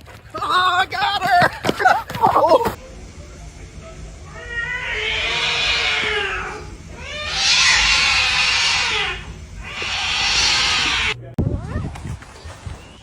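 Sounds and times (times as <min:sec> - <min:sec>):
cat yowling: 0:04.3 - 0:11.2.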